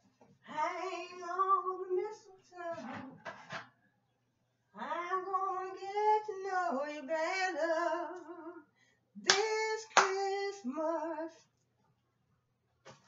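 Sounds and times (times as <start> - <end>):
woman singing: 0.5 - 3.2, 4.8 - 11.4.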